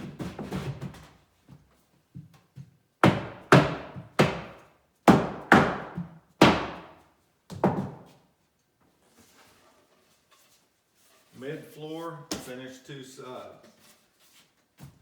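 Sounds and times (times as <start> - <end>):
knocks on wooden panel: 3.0 - 8.2.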